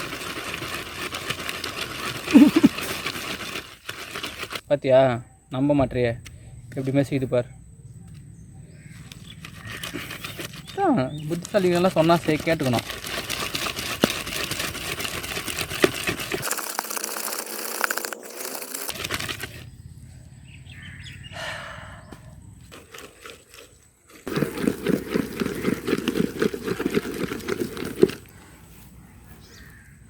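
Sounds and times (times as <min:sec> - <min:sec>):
grinding batter by hand: 0:00.0 - 0:04.7, 0:09.0 - 0:19.7, 0:22.7 - 0:28.4.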